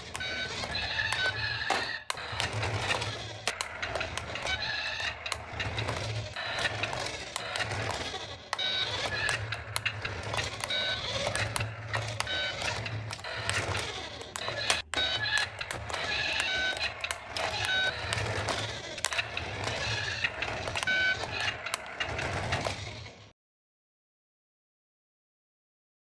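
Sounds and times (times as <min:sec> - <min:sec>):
clicks: 0:00.0 - 0:23.1
toy car electric motor whirring: 0:00.0 - 0:23.3.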